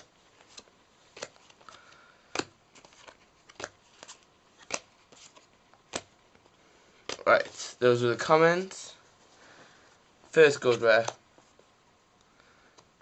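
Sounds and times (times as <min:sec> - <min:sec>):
cards snapping: 0:00.0 - 0:06.1, 0:07.0 - 0:07.4
soft paper rustle: 0:02.7 - 0:05.5.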